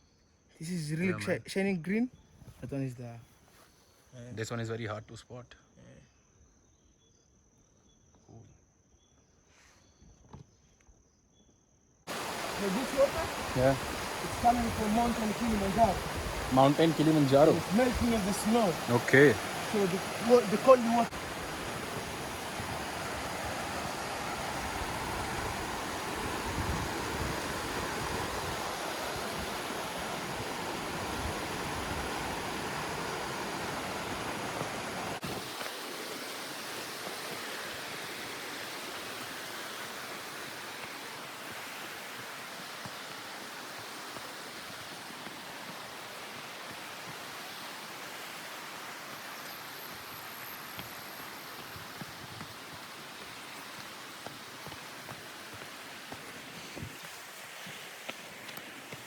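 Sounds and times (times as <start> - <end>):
mountain stream rushing: 12.1 - 59.0.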